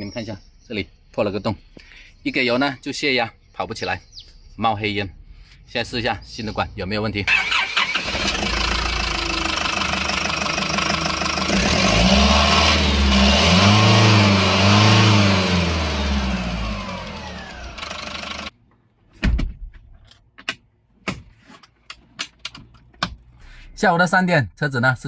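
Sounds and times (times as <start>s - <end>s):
diesel engine idling and revving: 7.3s - 18.5s.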